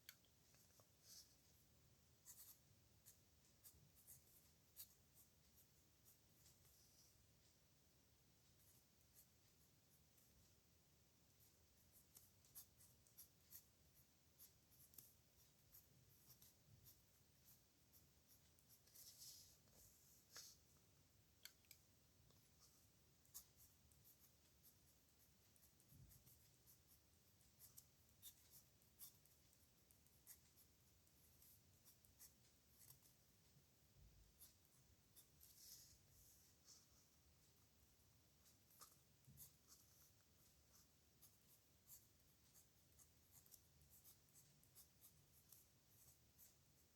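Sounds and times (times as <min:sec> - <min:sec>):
pen scratching on paper: 0:02.2 - 0:06.9, 0:11.3 - 0:20.6, 0:22.4 - 0:33.2, 0:34.2 - 0:36.9, 0:38.3 - 0:46.9.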